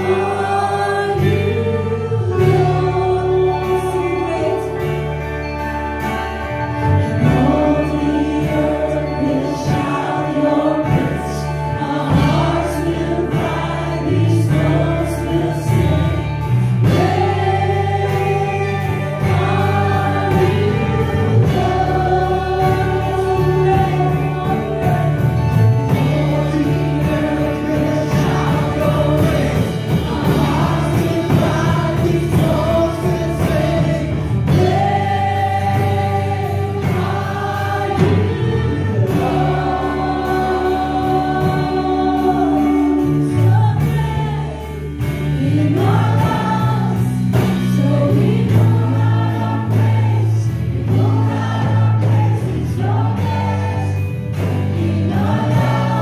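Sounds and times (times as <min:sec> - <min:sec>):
bass: 0:00.0 - 0:56.0
group singing worship song: 0:00.0 - 0:56.0
percussion beat: 0:16.8 - 0:56.0.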